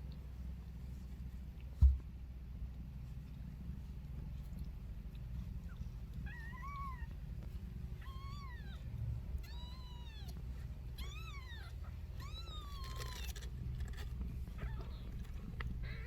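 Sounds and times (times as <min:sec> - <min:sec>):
kitten meowing: 0:06.2 - 0:07.2, 0:08.0 - 0:08.8, 0:09.4 - 0:13.3.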